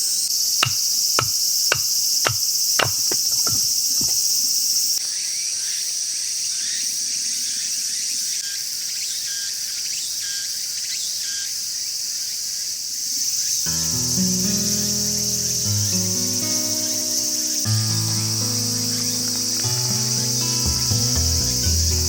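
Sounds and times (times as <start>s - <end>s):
insects chirping: 0.0s - 22.0s
sharp knocks: 0.6s - 4.2s.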